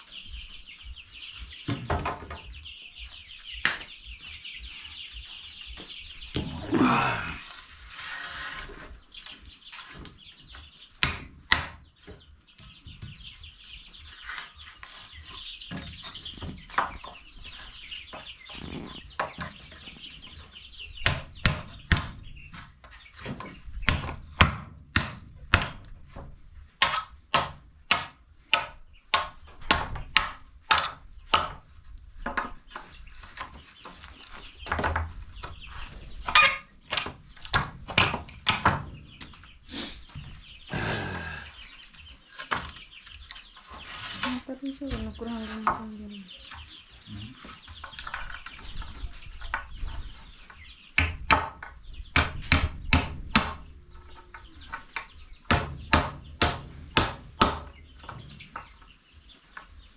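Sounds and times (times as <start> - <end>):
chickens clucking: 0.0 - 59.9
chicks cheeping: 0.0 - 59.9.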